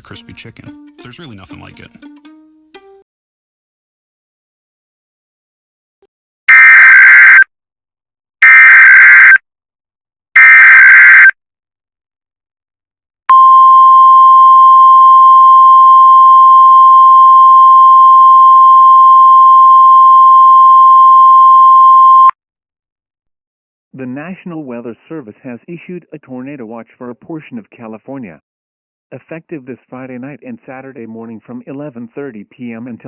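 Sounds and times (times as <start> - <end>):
loud steady alarm tone: 6.5 - 7.4, 8.4 - 9.4, 10.4 - 11.4.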